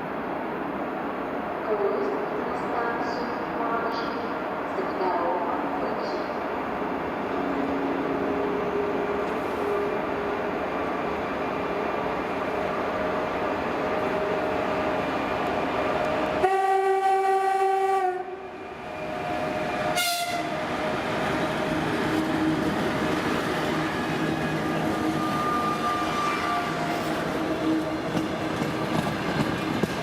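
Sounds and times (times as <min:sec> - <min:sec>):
diesel locomotive and train passing: 0:00.0 - 0:30.0
locomotive horn blast: 0:16.4 - 0:18.4, 0:19.7 - 0:20.7, 0:25.0 - 0:27.8
short horn toot: 0:20.0 - 0:20.5.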